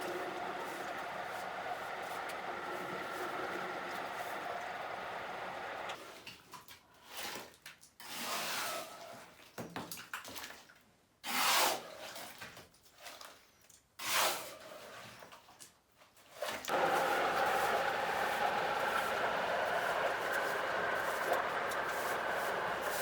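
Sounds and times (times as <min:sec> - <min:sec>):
steady running water: 0:00.0 - 0:06.0, 0:16.7 - 0:23.0
loud water splashes: 0:16.7 - 0:23.0.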